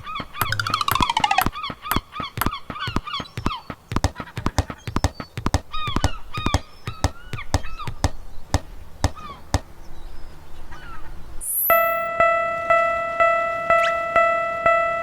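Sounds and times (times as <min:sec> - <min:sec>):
short pitch-bending calls: 0:00.0 - 0:08.2, 0:11.4 - 0:12.1
quick knocks: 0:00.0 - 0:09.7
railroad crossing alarm ding: 0:11.7 - 0:15.0.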